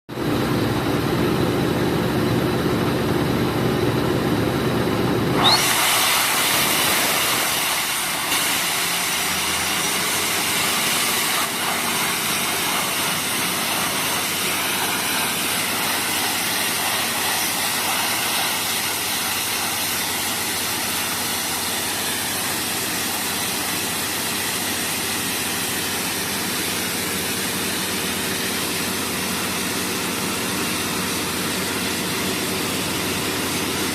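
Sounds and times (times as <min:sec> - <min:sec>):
air compressor engine running: 0:00.1 - 0:33.9
compressed air blasting: 0:05.4 - 0:28.5.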